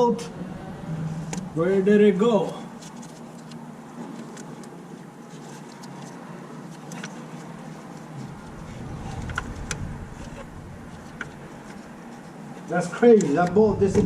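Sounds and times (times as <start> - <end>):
steady background hum: 0.0 - 14.0
low rumble: 8.2 - 12.3.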